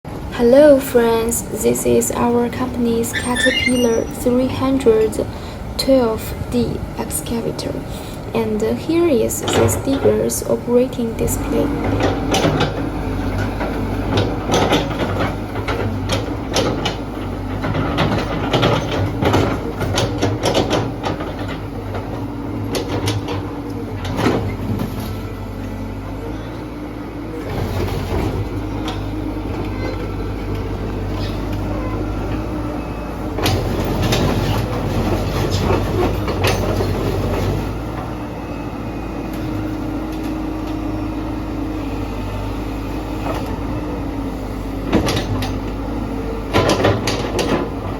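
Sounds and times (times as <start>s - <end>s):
excavator diesel engine running: 0.1s - 47.9s.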